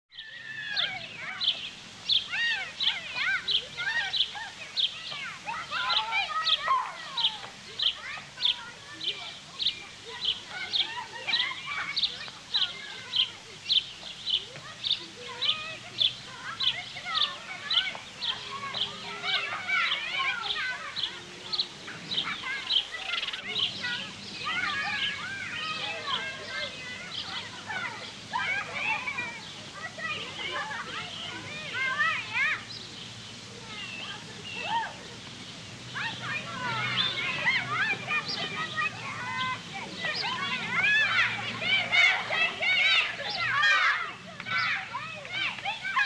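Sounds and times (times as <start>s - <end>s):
bird chirping: 0.1s - 43.9s
children shouting and squealing: 0.1s - 46.0s.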